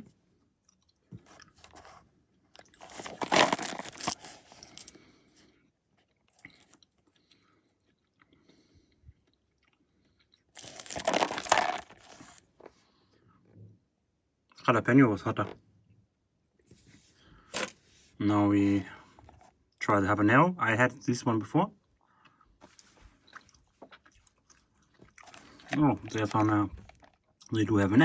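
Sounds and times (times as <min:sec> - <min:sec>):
crunchy chewing: 0:00.7 - 0:12.5, 0:22.0 - 0:27.6.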